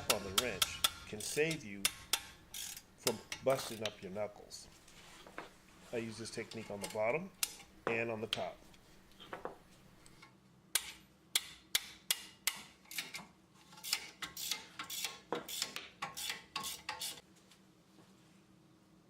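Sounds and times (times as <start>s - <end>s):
hammer tapping on wrench: 0.0s - 1.0s.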